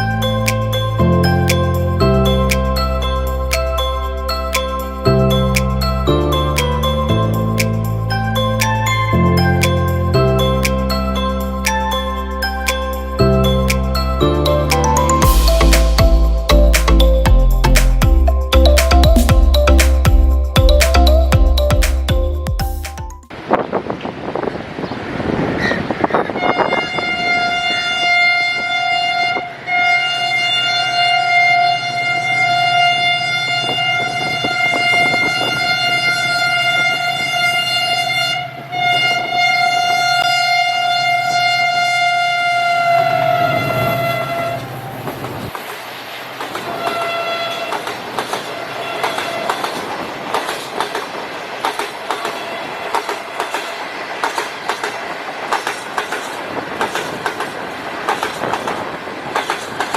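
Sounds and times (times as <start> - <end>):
diesel locomotive horn: 25.6 - 45.5, 46.6 - 50.0, 52.2 - 53.8
train wheels clickety-clack: 44.5 - 59.9.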